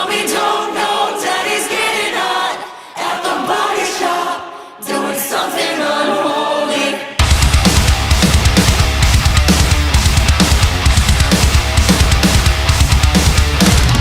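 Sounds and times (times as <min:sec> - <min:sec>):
voices singing a cappella: 0:00.0 - 0:07.2.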